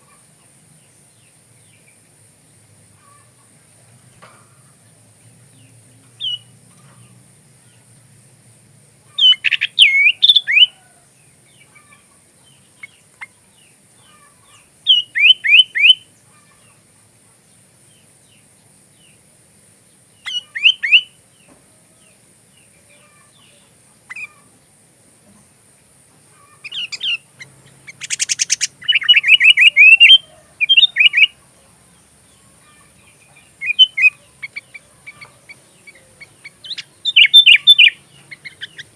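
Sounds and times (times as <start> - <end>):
faint high-pitched whine: 0.0 - 38.9
bird singing whistled notes: 5.6 - 6.5, 9.2 - 10.9, 14.8 - 16.1, 20.2 - 21.2, 26.6 - 31.4, 33.3 - 38.9.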